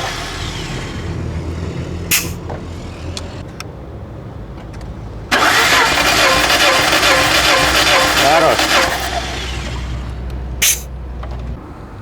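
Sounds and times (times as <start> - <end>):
starter cranking engine: 0.0 - 1.3, 5.3 - 10.9
compression gauge hiss: 2.1 - 2.4, 10.6 - 10.9.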